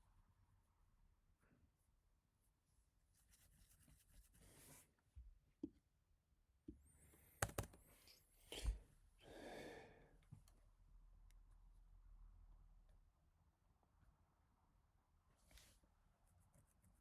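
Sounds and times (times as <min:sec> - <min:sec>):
keyboard keystrokes: 0:07.4 - 0:07.8
breathy exhale: 0:09.2 - 0:10.1.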